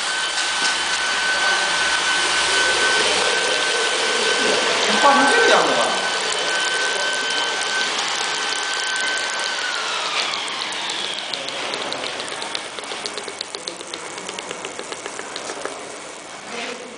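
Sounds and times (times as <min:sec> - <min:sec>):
furnace whining: 0:00.0 - 0:16.9
sharp ticks: 0:06.2 - 0:16.2.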